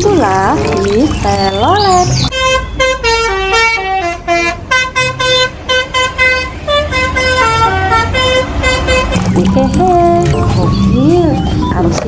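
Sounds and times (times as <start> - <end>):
multi-tone musical bus horn: 2.3 - 9.2.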